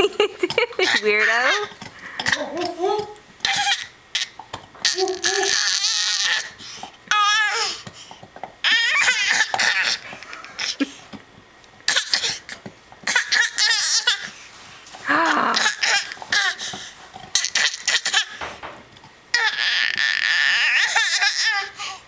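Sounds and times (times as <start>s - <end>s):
child laughing and squealing: 4.9s - 7.8s, 8.7s - 10.9s, 13.1s - 14.3s.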